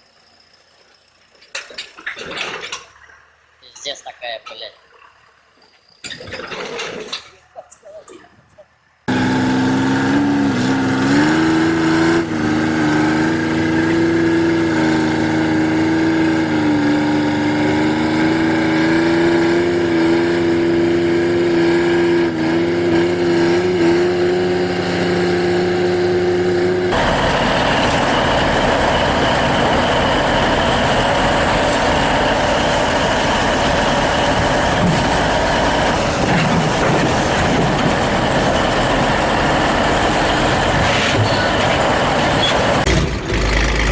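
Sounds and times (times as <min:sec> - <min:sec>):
heavy vehicle engine humming: 0:09.0 - 0:43.9
harsh machine noise with whine: 0:09.1 - 0:43.9.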